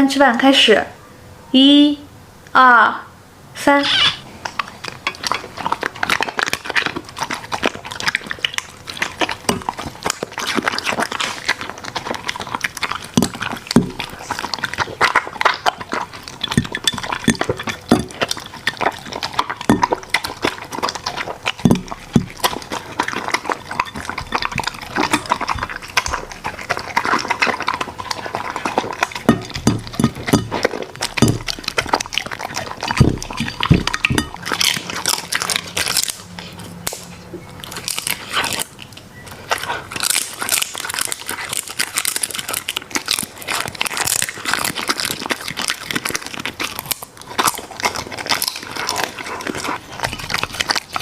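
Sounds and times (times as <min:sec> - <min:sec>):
dog chewing and crunching food: 0:03.7 - 0:51.0
dog lip-smacking: 0:04.4 - 0:37.1.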